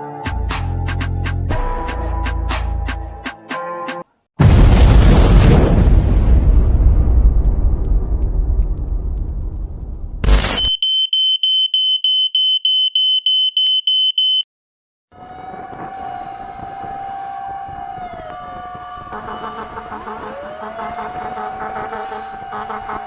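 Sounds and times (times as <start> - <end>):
electronic alarm beeping: 10.3 - 14.5
fire truck siren wailing: 15.1 - 23.0.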